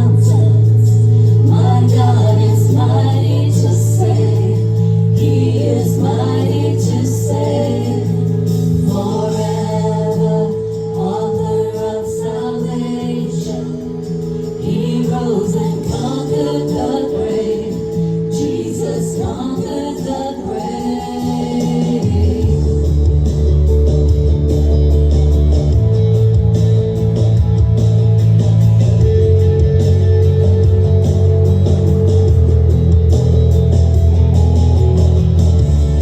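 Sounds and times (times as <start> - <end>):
gospel singing: 0.0 - 23.3.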